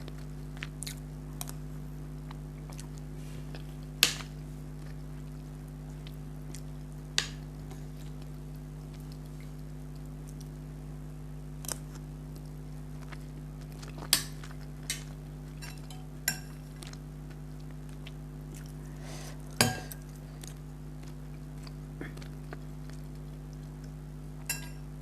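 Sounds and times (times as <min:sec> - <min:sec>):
steady low hum: 0:00.0 - 0:25.0
utensil clinking against plate: 0:19.6 - 0:20.0, 0:24.5 - 0:24.8.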